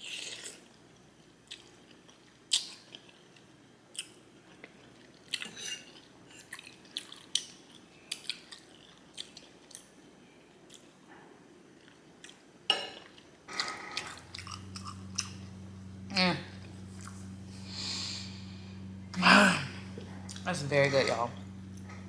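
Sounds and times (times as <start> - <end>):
wet chewing mouth sounds: 3.9 - 9.9.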